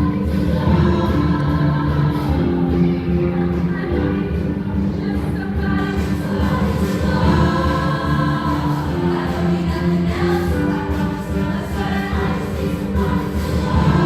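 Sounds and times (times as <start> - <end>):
backing music with low beat: 0.0 - 14.0
choir singing in parts: 0.0 - 14.0.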